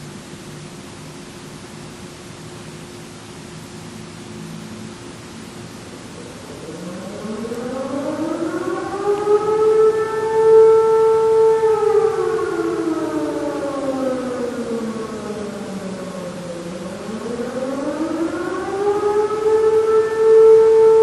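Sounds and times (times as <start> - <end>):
siren wailing: 6.1 - 21.0.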